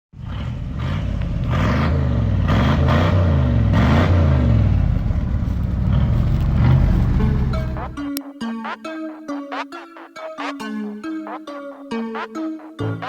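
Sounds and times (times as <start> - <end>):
engine revving with throttle blips: 0.1 - 8.2.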